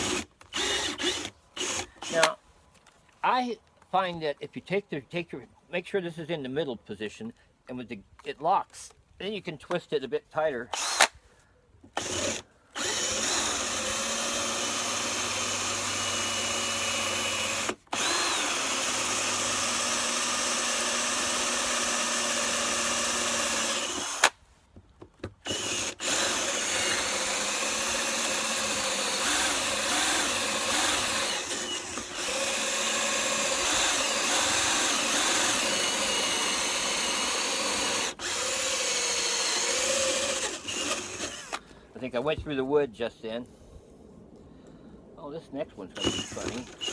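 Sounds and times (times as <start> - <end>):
power drill boring into wood: 0.0 - 2.4, 10.7 - 11.1, 11.9 - 24.4, 25.4 - 41.6, 46.0 - 46.9.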